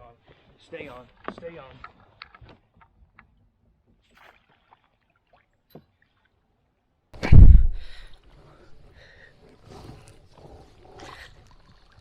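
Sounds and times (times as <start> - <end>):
loud thump: 7.2 - 8.0.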